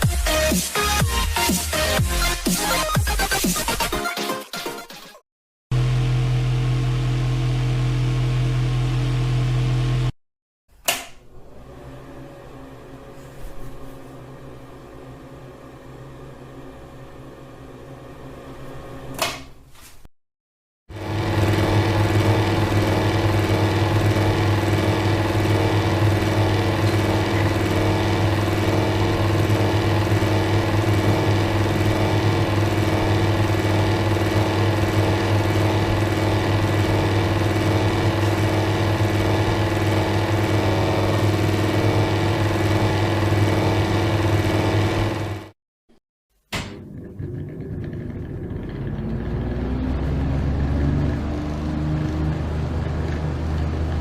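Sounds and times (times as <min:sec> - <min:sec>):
sharp switch click: 0:10.8 - 0:11.2
electric fan motor humming: 0:10.8 - 0:19.4, 0:20.9 - 0:45.5.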